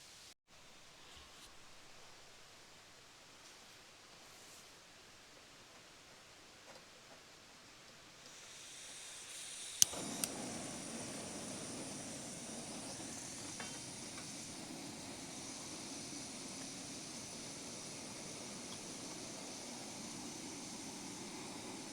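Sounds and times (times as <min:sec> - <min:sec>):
gas burner rushing: 0:08.2 - 0:21.9
gas hissing from valve: 0:08.2 - 0:21.9
igniter clicks: 0:08.4 - 0:21.9.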